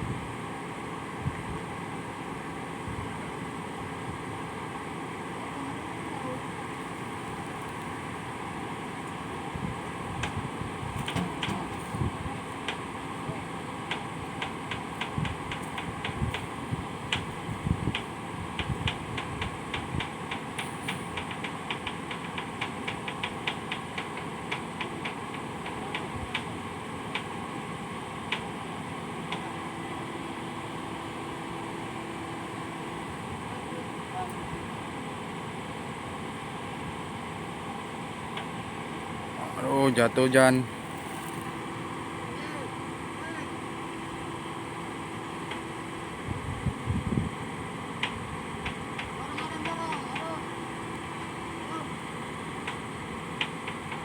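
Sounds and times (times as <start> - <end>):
steady mechanical hum: 0.0 - 54.0
sharp metallic ticks: 17.9 - 26.5.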